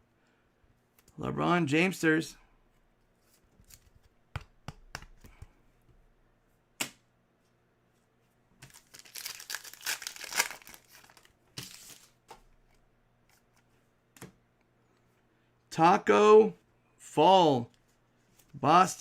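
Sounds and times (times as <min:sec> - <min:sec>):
wrapper tearing and crinkling: 0:08.7 - 0:12.1.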